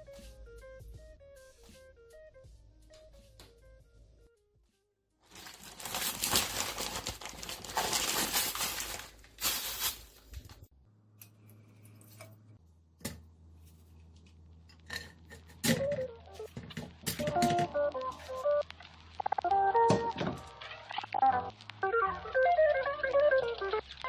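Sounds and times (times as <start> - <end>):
packaging crinkling and tearing: 5.2 - 10.6.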